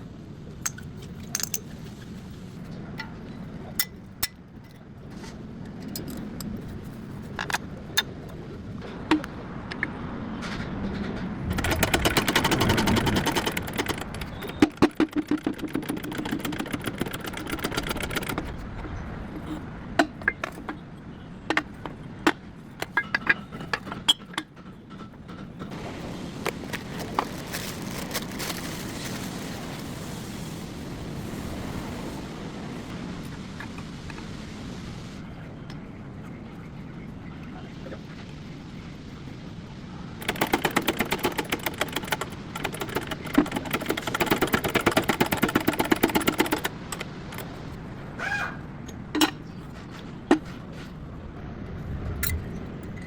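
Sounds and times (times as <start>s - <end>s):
metal clinks and knocks: 0.6s - 2.0s, 3.8s - 9.9s, 11.5s - 20.9s, 21.5s - 25.8s
fast mechanical rattle: 11.3s - 20.8s, 40.2s - 47.7s.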